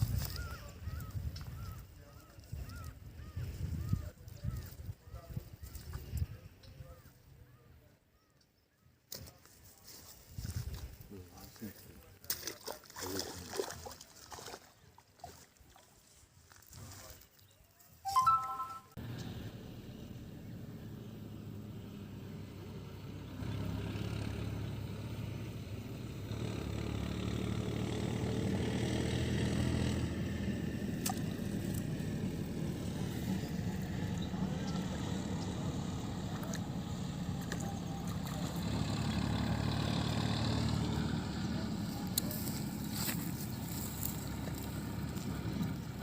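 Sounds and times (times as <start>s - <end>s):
engine running: 19.0s - 46.0s.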